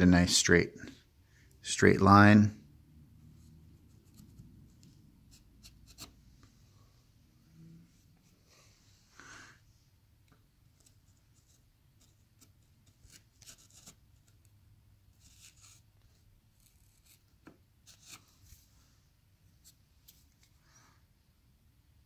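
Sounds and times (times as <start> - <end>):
faint scratching and rubbing: 10.7 - 14.4, 15.1 - 21.0.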